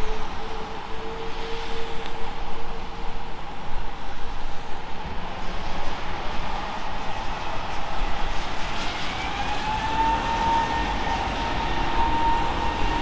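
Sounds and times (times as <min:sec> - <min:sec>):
jet engines whining: 0:08.4 - 0:13.0.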